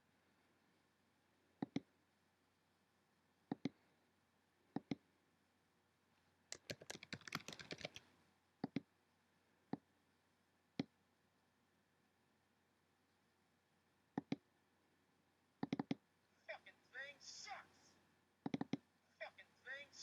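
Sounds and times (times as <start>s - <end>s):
computer mouse clicks: 1.6s - 1.9s, 3.5s - 3.8s, 4.7s - 5.0s, 6.5s - 8.9s, 14.2s - 14.4s, 15.6s - 16.0s, 18.4s - 18.8s
keyboard typing: 6.5s - 8.8s.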